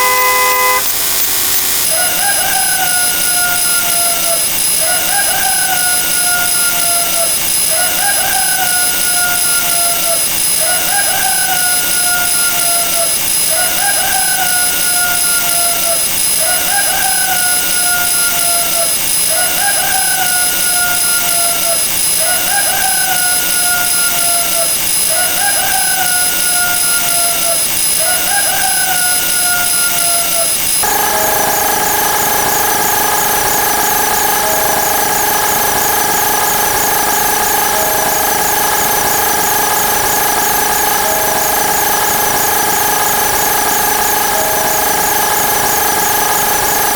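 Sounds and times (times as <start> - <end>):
steady electronic tones: 0.0 - 1.9, 29.6 - 46.9
falling electronic chirp: 0.0 - 46.9
quick high chirps: 0.0 - 46.9.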